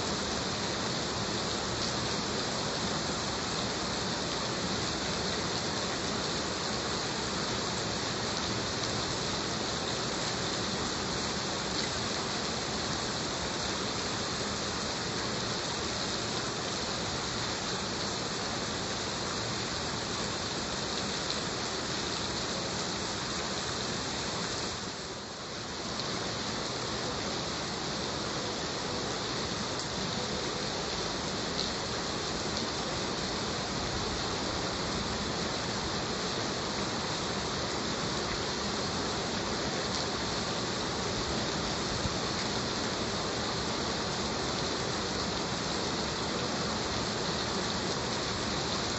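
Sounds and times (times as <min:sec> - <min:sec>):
heavy rain hissing: 0:00.0 - 0:48.9.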